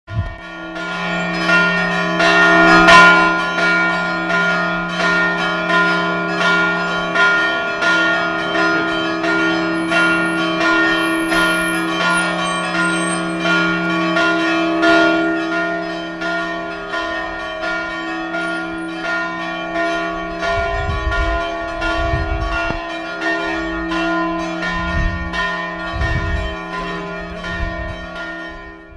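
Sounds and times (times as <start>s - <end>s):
church bells pealing: 0.1s - 28.9s.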